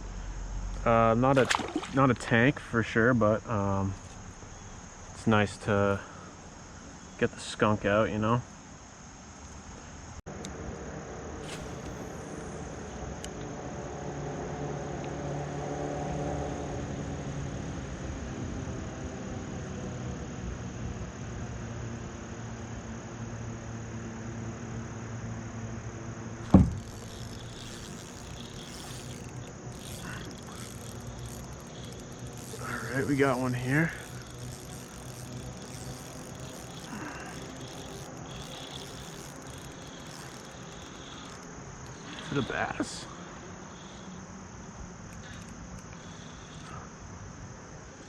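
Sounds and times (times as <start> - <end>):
high-pitched insect chorus: 0.0 - 48.0
sharp thump: 26.5 - 27.0.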